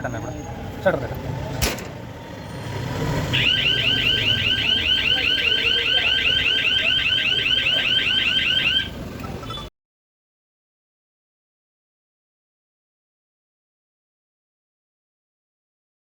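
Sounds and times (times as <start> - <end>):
electronic alarm siren warbling: 3.3 - 9.7.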